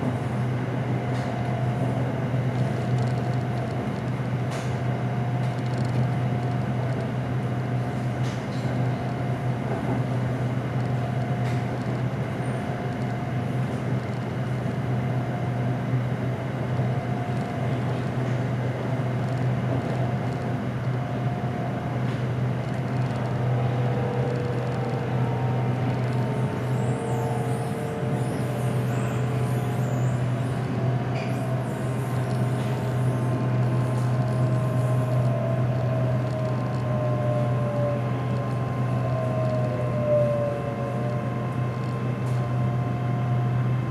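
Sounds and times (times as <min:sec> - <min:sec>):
electric train humming: 0:00.0 - 0:43.9
faint whining tones: 0:22.6 - 0:43.9.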